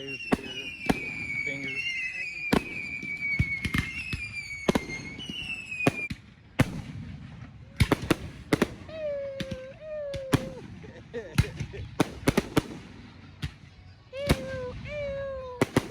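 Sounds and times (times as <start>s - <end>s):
firework whistling: 0.0s - 6.8s, 7.9s - 10.8s, 14.1s - 15.9s
firework bangs and cracks: 0.2s - 15.9s.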